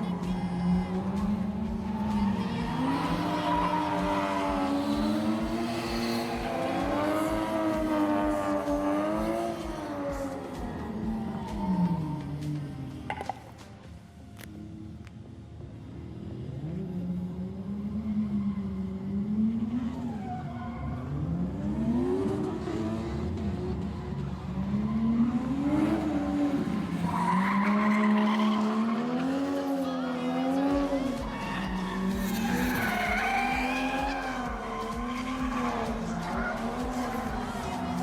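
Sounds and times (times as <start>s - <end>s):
car engine revving: 0.0s - 13.7s, 14.4s - 38.0s
tyres squealing: 26.9s - 38.0s.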